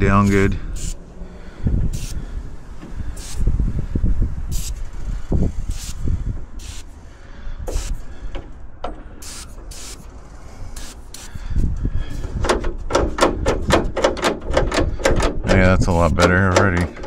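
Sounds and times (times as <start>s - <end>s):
aerosol spray hissing: 0.2s - 1.0s, 1.9s - 2.3s, 3.1s - 3.6s, 4.5s - 7.0s, 7.7s - 8.1s, 9.2s - 11.4s
low knocks and handling noise: 12.3s - 17.0s.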